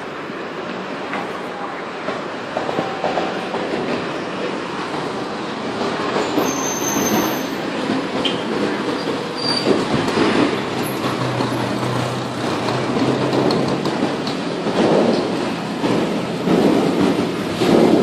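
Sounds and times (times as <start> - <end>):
vehicle rattling rumble: 7.7 - 18.0.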